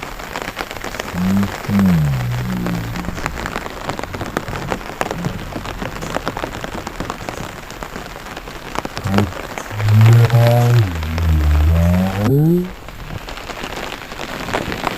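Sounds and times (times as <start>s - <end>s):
rain dripping and pattering: 0.0s - 14.9s
low pitched drone: 1.1s - 6.3s, 9.0s - 13.2s.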